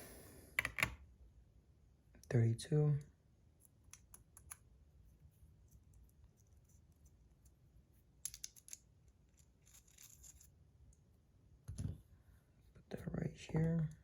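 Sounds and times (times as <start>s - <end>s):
small metal parts clicking: 8.2s - 10.5s.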